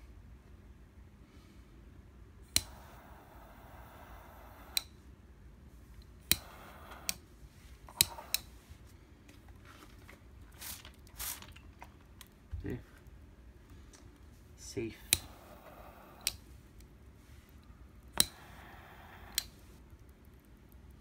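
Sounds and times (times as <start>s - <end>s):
torch flame hissing: 2.4s - 4.9s, 6.1s - 8.5s, 14.8s - 19.9s
torch lighter click: 2.5s - 5.0s, 6.2s - 7.2s, 7.9s - 8.5s, 15.1s - 16.4s, 18.1s - 19.6s.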